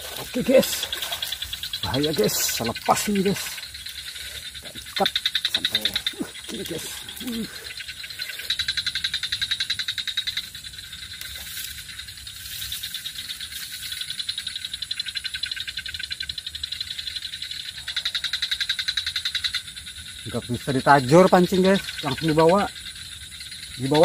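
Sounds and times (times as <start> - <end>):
animal calling in pulsing trill: 0.0 - 10.5, 20.3 - 22.8.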